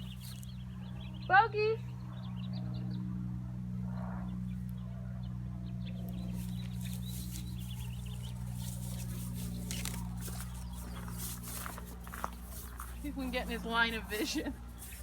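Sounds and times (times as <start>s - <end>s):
birds chirping: 0.0s - 15.0s
steady low hum: 0.0s - 15.0s
rustling: 6.3s - 15.0s.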